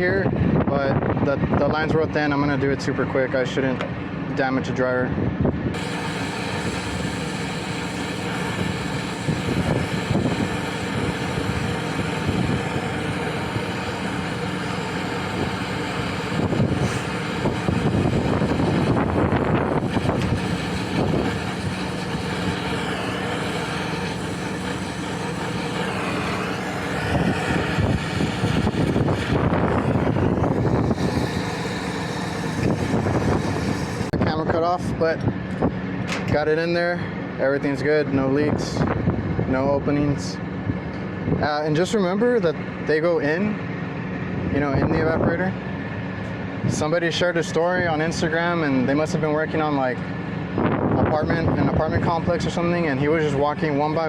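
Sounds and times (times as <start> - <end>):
steady machine hum: 0.0 - 54.0
torch hissing: 5.7 - 34.2.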